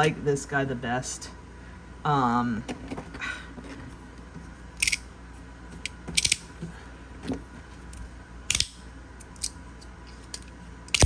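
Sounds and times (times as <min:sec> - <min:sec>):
magnetic fidget sliders clicking: 0:04.8 - 0:05.0, 0:05.8 - 0:06.5, 0:08.5 - 0:09.6.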